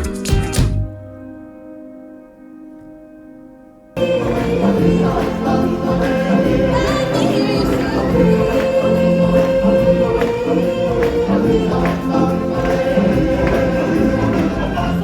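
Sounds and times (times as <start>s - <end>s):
band with percussion strikes: 0.0s - 1.0s
choir singing: 4.0s - 15.0s.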